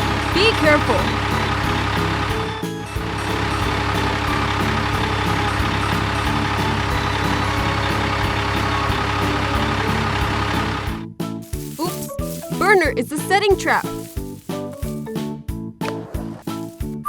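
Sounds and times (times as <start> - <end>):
cartoon truck engine running: 0.0 - 11.0
background music with steady beat: 0.0 - 17.0.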